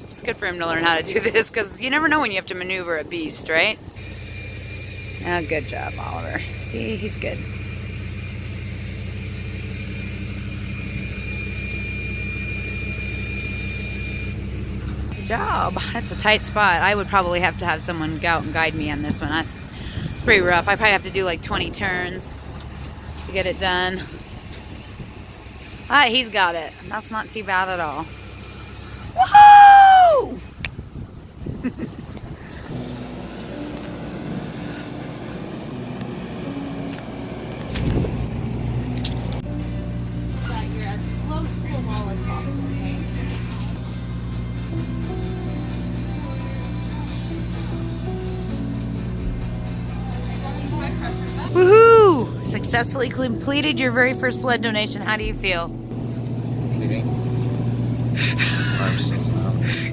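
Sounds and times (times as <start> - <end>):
large vehicle engine rumbling: 0.0 - 59.9
thin high whine: 4.0 - 16.0.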